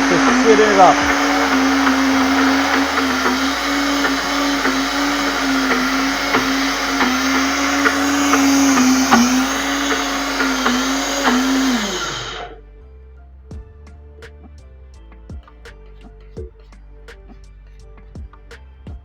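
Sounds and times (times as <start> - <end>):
blender motor whining: 0.0 - 12.6.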